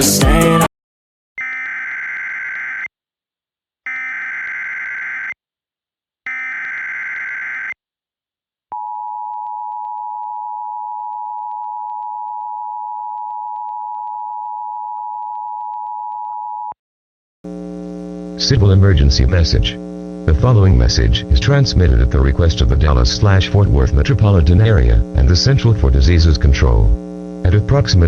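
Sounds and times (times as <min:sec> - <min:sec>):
steady attention tone: 0:17.5 - 0:28.0.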